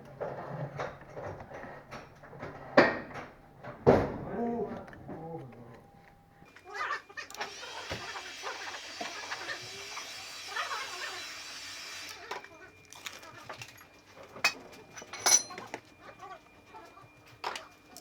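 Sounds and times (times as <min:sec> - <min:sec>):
small motor whining and hissing: 0:07.4 - 0:12.4.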